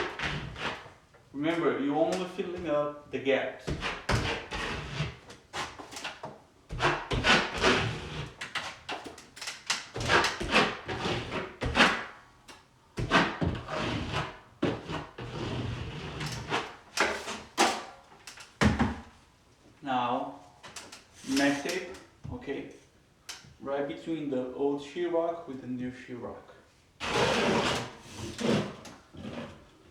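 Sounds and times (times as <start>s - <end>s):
drywall knife scraping: 0.0s - 1.0s, 3.7s - 12.2s, 13.0s - 18.0s, 20.8s - 22.1s, 27.0s - 29.9s.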